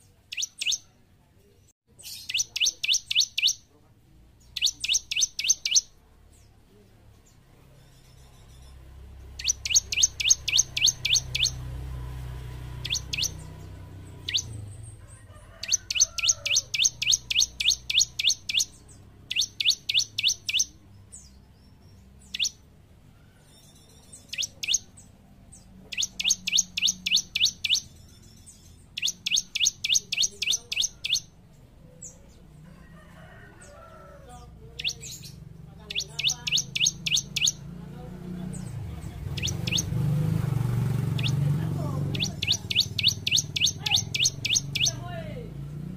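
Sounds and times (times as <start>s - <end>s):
bird singing high chip notes: 0.3s - 0.9s, 2.0s - 3.7s, 4.4s - 6.0s, 7.8s - 11.8s, 12.6s - 14.9s, 15.6s - 22.7s, 23.4s - 31.4s, 34.8s - 37.7s, 38.5s - 40.2s, 40.9s - 45.2s.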